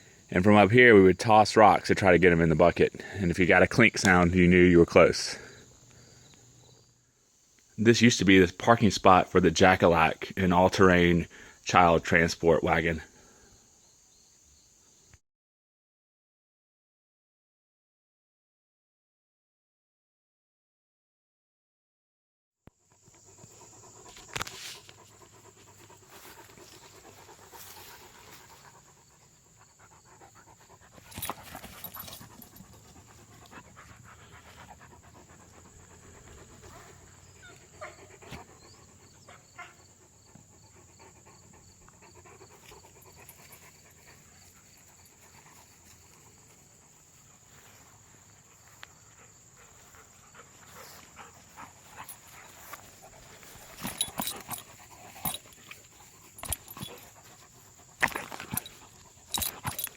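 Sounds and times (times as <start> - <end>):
dog panting: 23.0 - 47.1, 48.2 - 59.9.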